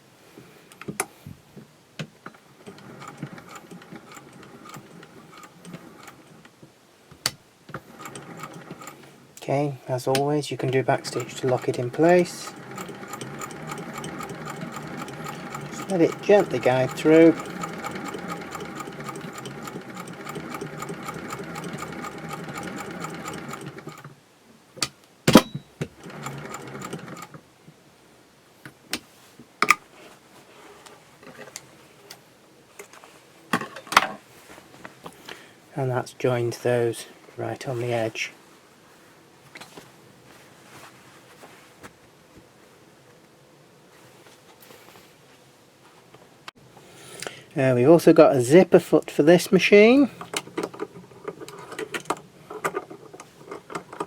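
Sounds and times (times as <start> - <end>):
sewing machine clicks: 2.6 - 6.3, 7.2 - 9.1, 10.8 - 24.1, 24.8 - 27.4
sewing machine running: 2.6 - 6.3, 7.8 - 9.1, 10.8 - 24.1, 25.9 - 27.4.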